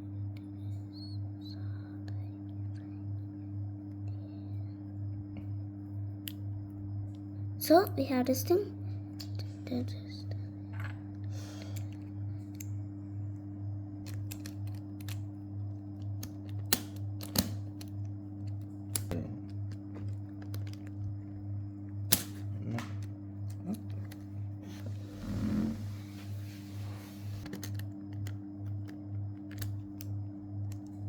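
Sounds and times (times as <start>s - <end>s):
steady low hum: 0.0s - 31.0s
plastic puzzle pieces clicking: 14.1s - 15.2s.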